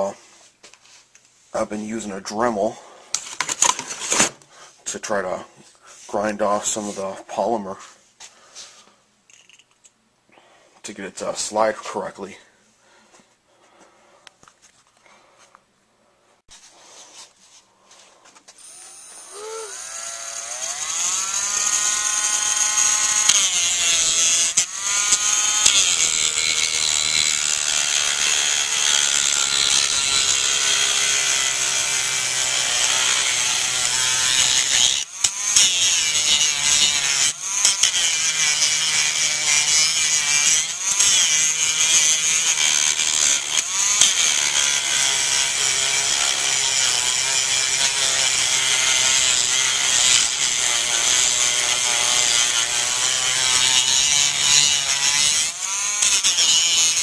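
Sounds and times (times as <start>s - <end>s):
rotary tool grinding plastic: 18.5s - 57.0s.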